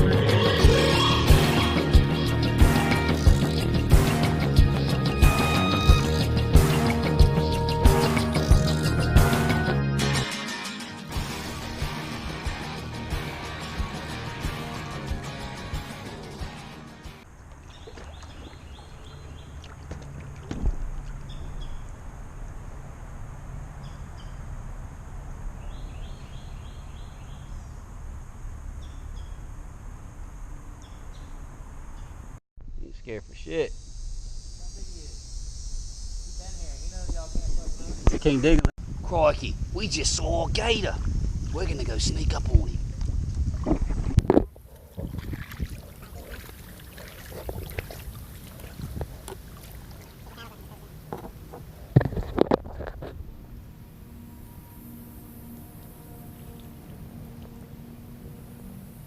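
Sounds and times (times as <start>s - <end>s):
paddle strokes in water: 17.4s - 22.0s, 43.3s - 53.2s
birds chirping: 17.4s - 22.1s, 25.5s - 27.9s, 44.8s - 52.0s
wind rumble on microphone: 36.4s - 50.3s.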